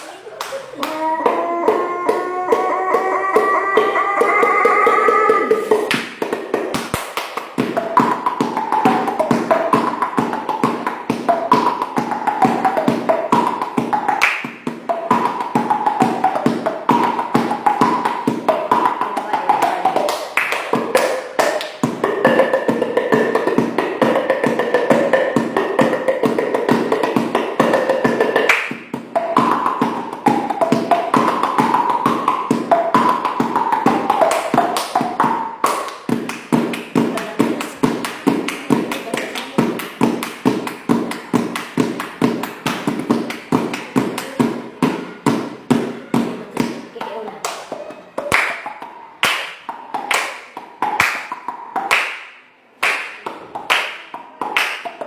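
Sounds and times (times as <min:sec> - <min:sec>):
rapid rhythmic clicking: 0:02.9 - 0:52.2.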